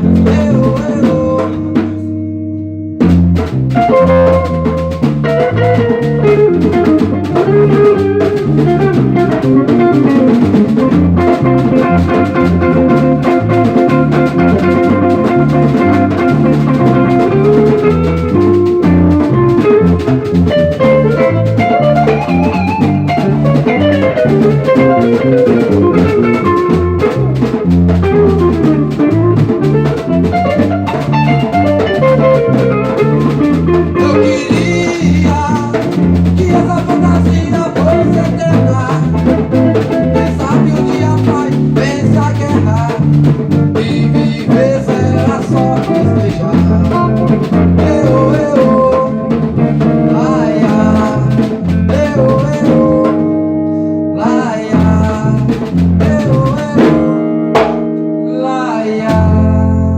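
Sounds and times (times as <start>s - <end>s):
drum kit and percussion: 0.0s - 2.0s, 3.0s - 53.4s, 54.2s - 58.0s
guitar melody: 0.0s - 59.9s.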